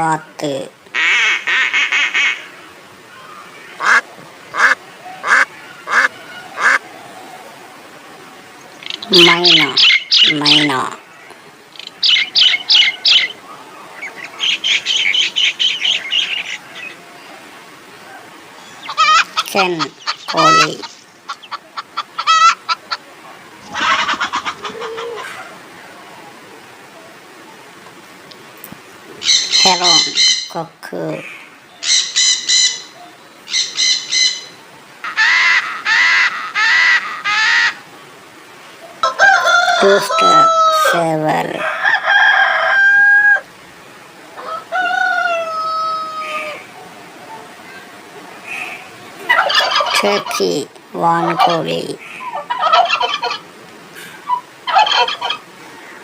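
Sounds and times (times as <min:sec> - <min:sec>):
myna calling harshly: 0:03.8 - 0:06.8, 0:09.0 - 0:11.1, 0:18.8 - 0:23.0, 0:29.2 - 0:32.9, 0:39.1 - 0:41.8, 0:49.3 - 0:53.4
myna chattering: 0:03.8 - 0:06.8, 0:08.8 - 0:11.1, 0:18.8 - 0:25.4, 0:48.7 - 0:53.4.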